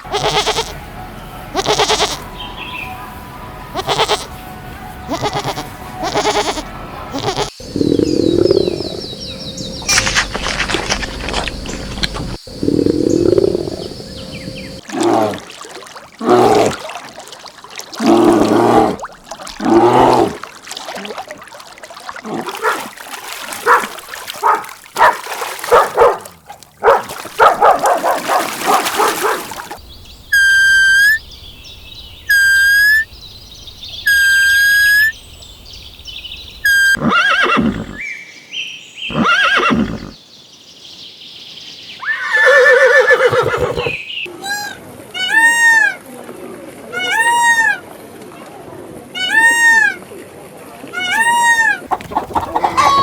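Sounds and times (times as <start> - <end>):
farm animal calls: 0.0 - 0.8, 1.5 - 2.3, 3.7 - 4.4, 5.1 - 14.8, 39.1 - 40.2, 49.2 - 50.0, 50.9 - 53.0.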